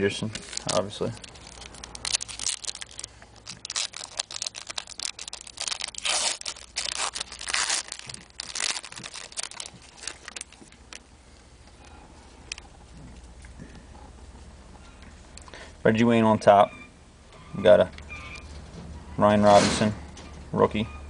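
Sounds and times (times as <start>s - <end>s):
wrapper torn and crinkled: 0.2s - 11.0s.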